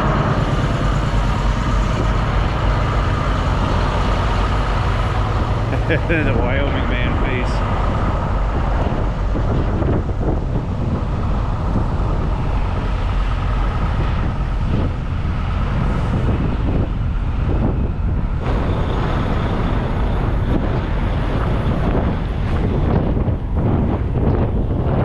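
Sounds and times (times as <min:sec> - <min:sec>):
road noise: 0:00.0 - 0:25.0
truck engine rumble: 0:00.0 - 0:25.0.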